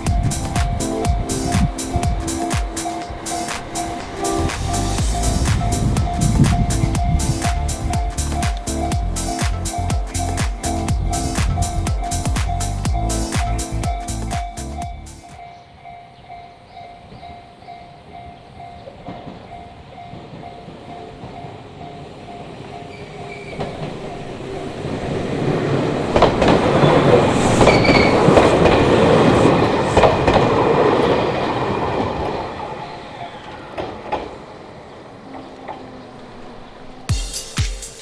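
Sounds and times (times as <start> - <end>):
train wheels clacking over rails: 0.0 - 15.4, 20.1 - 34.6
level crossing warning bell: 0.0 - 24.5.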